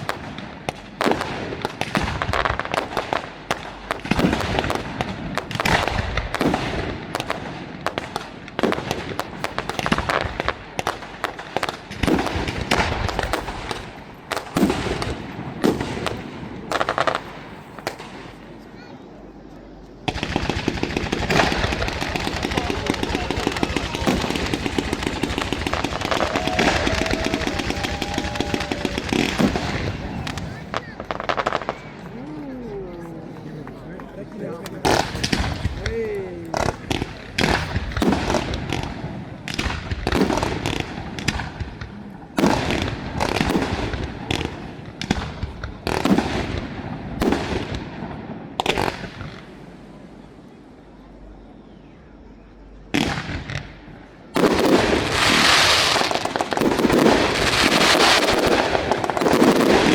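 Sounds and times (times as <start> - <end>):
loud firework bangs: 0.0 - 18.4, 20.0 - 32.2, 33.4 - 49.8, 52.9 - 59.9
fireworks crackling: 0.0 - 50.6, 52.8 - 59.9.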